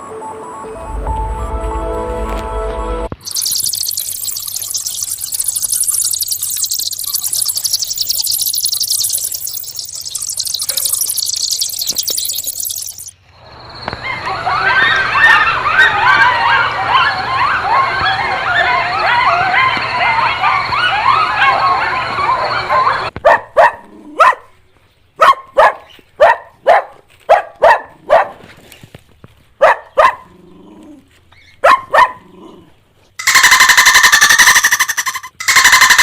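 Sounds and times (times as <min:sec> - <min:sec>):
chorus of yelping calls: 0:03.2 - 0:13.1, 0:14.0 - 0:23.1, 0:33.2 - 0:36.0
dog barking: 0:17.8 - 0:24.5, 0:25.2 - 0:28.4, 0:29.6 - 0:30.3, 0:31.6 - 0:32.3.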